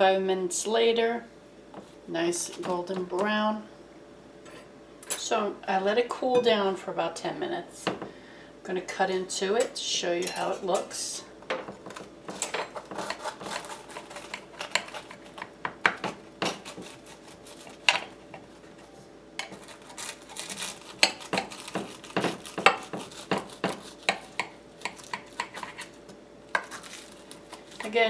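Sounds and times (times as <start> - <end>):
metal utensils scraping baking dish: 10.1 - 11.2.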